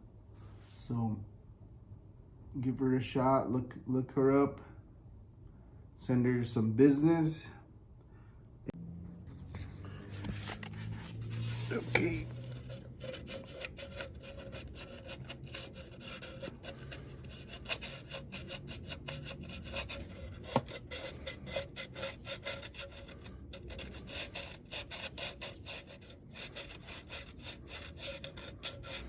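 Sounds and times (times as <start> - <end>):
scraping gasket residue: 9.5 - 29.0.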